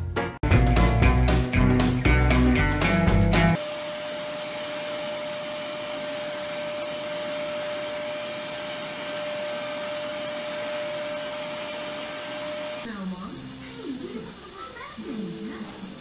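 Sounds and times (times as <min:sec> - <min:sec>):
music: 0:00.0 - 0:03.6, 0:12.9 - 0:16.0
appliance motor whirring: 0:03.6 - 0:12.9.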